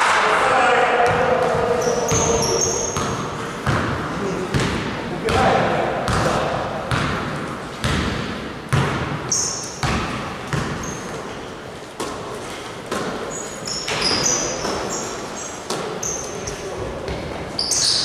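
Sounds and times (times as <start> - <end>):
basketball bouncing on gym floor: 1.0 - 11.4, 12.0 - 17.8
sneaker squeaks: 1.1 - 3.8, 9.3 - 18.0.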